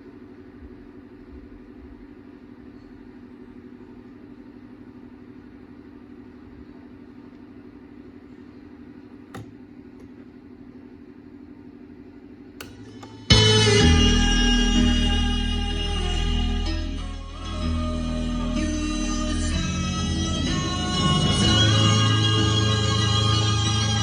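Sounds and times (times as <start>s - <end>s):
low hum: 0.0s - 24.0s
sharp click: 12.6s - 13.2s.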